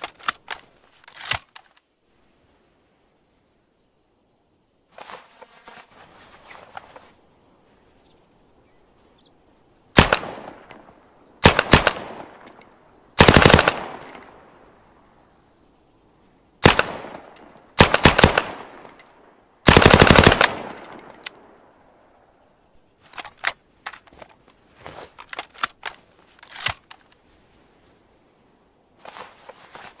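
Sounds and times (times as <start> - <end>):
submachine gun bursts: 13.2 - 14.1, 17.8 - 18.7, 19.7 - 21.1.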